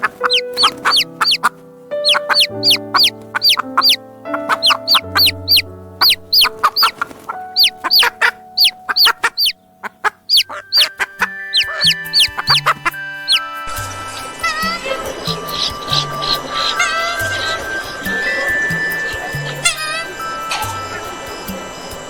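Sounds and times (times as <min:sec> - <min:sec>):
chicks peeping: 0:00.0 - 0:13.5
background music with held notes: 0:00.0 - 0:22.0.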